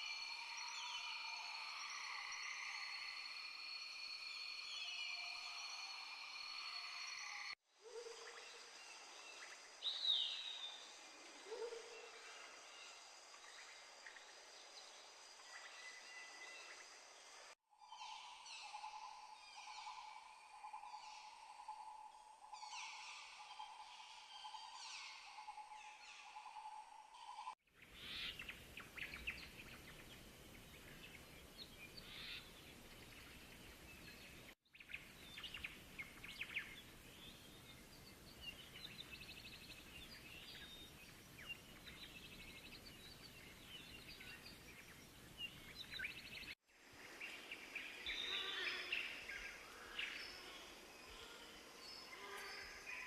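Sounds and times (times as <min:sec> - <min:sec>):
bird chirps and trills: 0:22.4 - 0:53.0.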